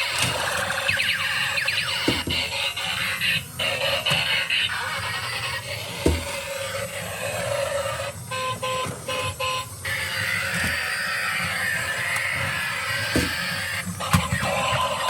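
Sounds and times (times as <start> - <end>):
toy horn two-tone beeps: 8.3 - 9.7.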